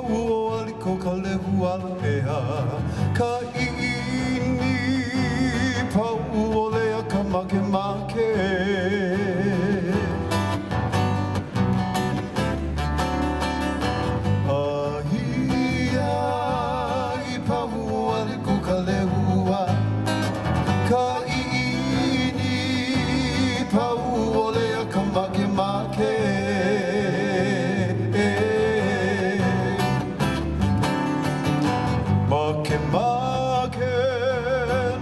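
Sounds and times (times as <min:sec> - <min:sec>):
strummed acoustic guitar: 0:00.0 - 0:35.0
person singing with vibrato: 0:14.4 - 0:20.0, 0:20.7 - 0:30.3.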